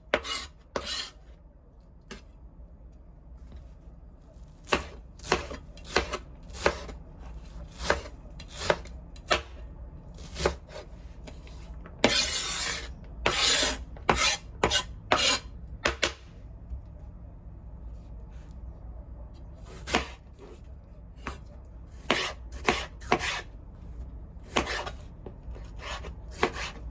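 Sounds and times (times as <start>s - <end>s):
knife chopping on cutting board: 0.1s - 1.1s, 4.6s - 7.0s, 7.7s - 9.5s, 10.2s - 10.8s, 11.4s - 16.2s, 19.7s - 20.6s, 22.0s - 23.5s, 24.4s - 25.0s, 25.6s - 26.8s.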